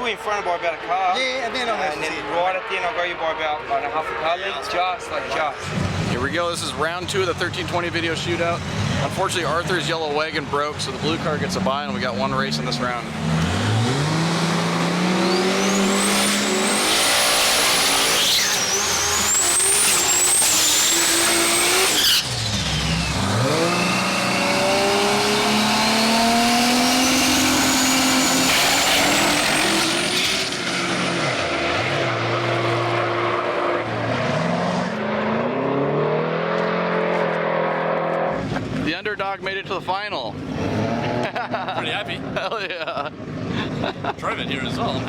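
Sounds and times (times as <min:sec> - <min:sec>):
drag race car engines revving: 0:00.0 - 0:45.0
supercharger whine: 0:10.8 - 0:38.9.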